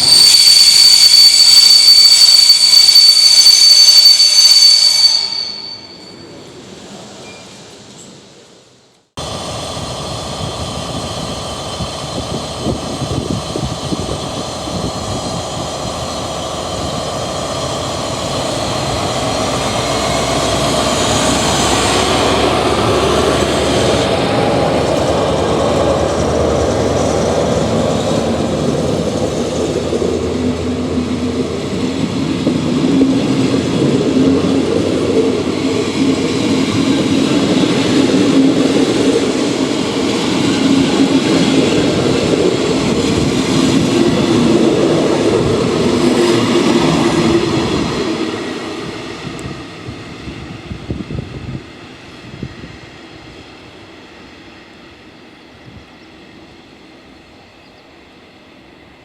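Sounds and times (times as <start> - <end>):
train brake squeal: 0.0 - 6.6, 7.2 - 8.2
train running on rails: 0.0 - 59.0.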